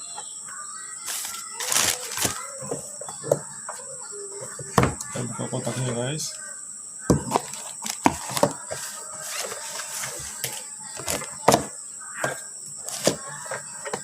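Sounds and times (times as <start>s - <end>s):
plastic packaging rustling: 1.0s - 2.8s, 7.3s - 11.6s.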